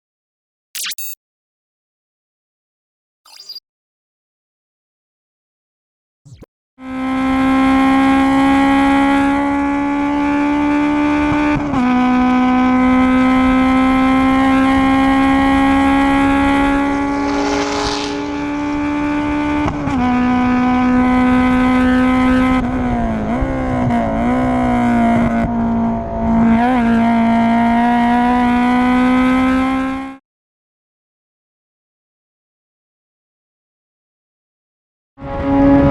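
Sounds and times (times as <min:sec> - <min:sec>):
race car engine revving: 0:06.8 - 0:30.2, 0:35.2 - 0:35.9.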